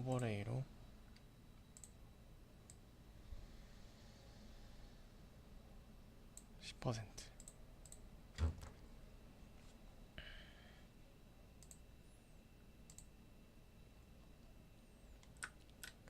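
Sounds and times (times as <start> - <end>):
computer mouse clicks: 1.1 - 2.0, 7.4 - 8.7, 11.6 - 11.8, 12.9 - 13.1, 15.2 - 16.0.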